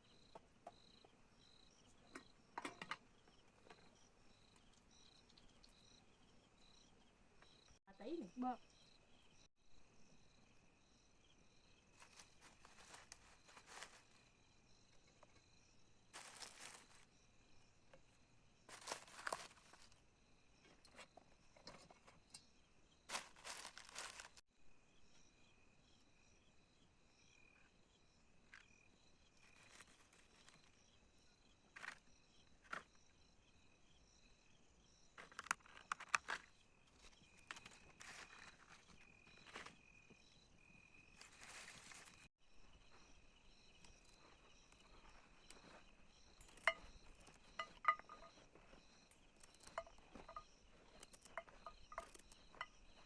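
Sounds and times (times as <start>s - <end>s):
crickets chirring: 0.0s - 53.0s
rustling and crunching from handling: 11.9s - 14.3s, 16.2s - 17.1s, 18.7s - 20.0s, 23.1s - 24.4s, 29.4s - 30.8s, 35.2s - 39.9s, 41.1s - 42.3s, 43.8s - 53.0s.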